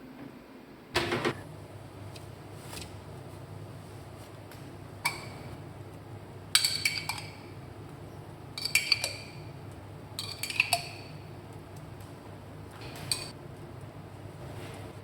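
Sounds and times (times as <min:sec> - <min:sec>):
spoon clinking against bowl: 0:06.5 - 0:07.6, 0:08.5 - 0:09.5, 0:10.2 - 0:11.3, 0:13.0 - 0:13.3.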